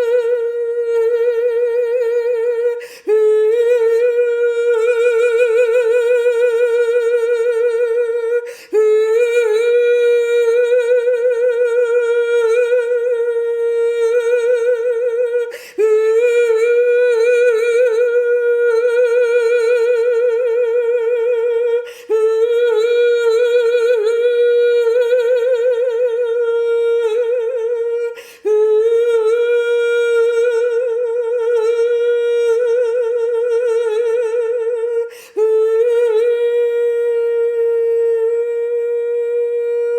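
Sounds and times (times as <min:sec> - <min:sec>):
woman singing wordlessly: 0:00.0 - 0:39.9
quick breath: 0:28.2 - 0:28.4, 0:35.1 - 0:35.4.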